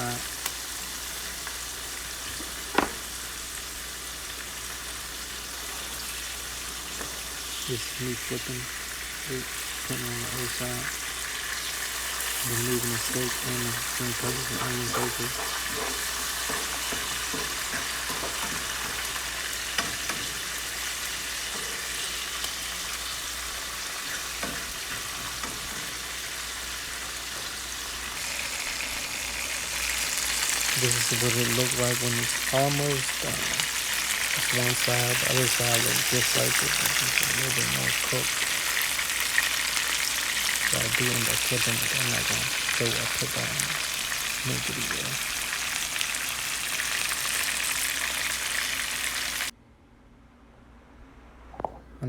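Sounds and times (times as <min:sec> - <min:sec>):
steak sizzling in a pan: 0:00.0 - 0:49.5.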